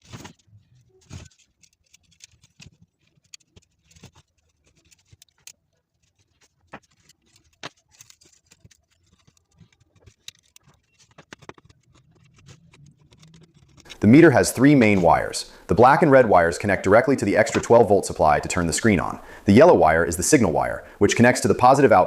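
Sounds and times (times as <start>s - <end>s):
clicks and taps of small parts: 1.0s - 14.0s.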